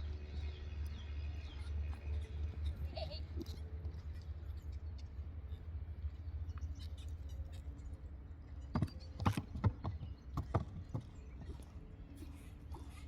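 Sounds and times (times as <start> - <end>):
horse hoofbeats: 8.7 - 13.0.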